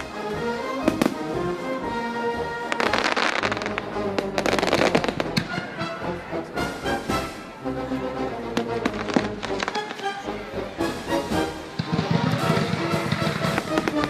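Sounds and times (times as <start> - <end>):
music: 0.0 - 14.0
fireworks bangs and crackling: 0.8 - 1.5, 2.4 - 5.7, 8.6 - 10.0, 11.2 - 14.0.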